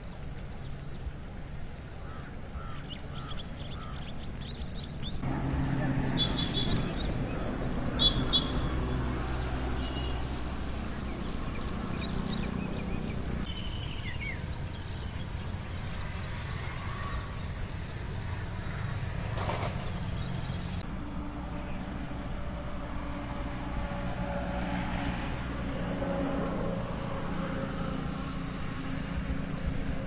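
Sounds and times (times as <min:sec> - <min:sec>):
low engine hum: 0:00.0 - 0:30.0
bird chirps: 0:02.6 - 0:05.2, 0:06.2 - 0:07.4, 0:08.0 - 0:08.7, 0:11.0 - 0:15.5.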